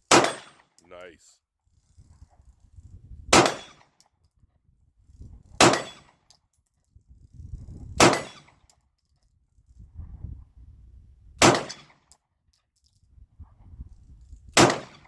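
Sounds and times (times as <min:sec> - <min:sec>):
pistol shots: 0:03.4 - 0:03.7, 0:14.6 - 0:15.0.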